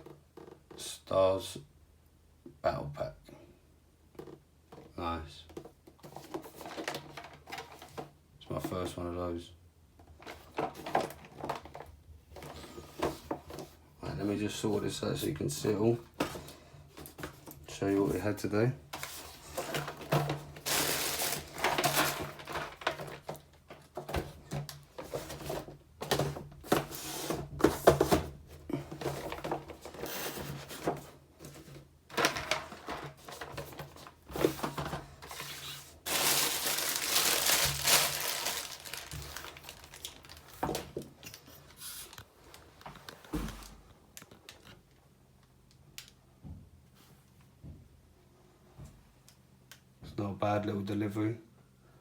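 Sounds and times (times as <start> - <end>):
packaging rustling and knocks: 5.6 - 8.1, 10.2 - 13.7, 18.9 - 43.9.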